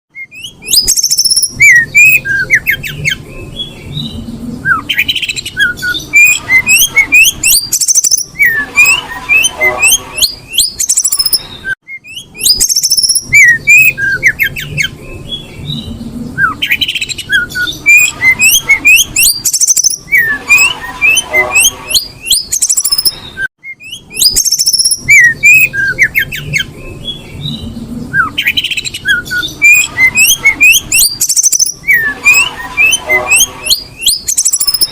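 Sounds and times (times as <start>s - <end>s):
bird chirping and whistling: 0.1s - 34.9s.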